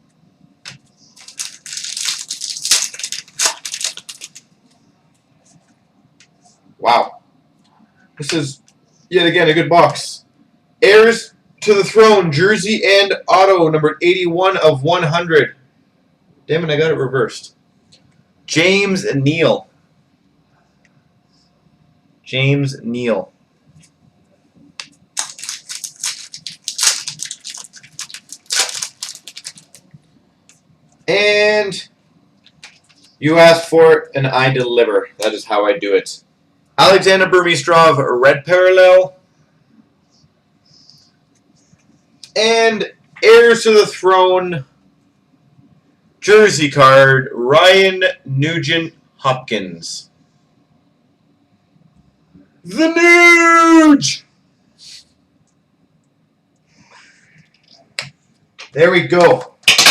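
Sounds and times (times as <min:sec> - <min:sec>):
cards and packaging crinkling: 0:00.7 - 0:04.5, 0:24.8 - 0:30.0, 0:32.5 - 0:33.2.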